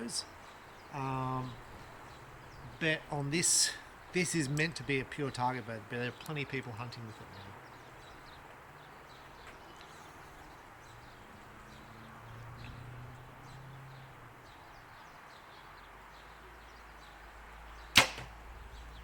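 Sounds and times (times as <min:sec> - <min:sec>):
steady hiss: 0:00.0 - 0:06.6
small birds chirping: 0:00.0 - 0:19.0.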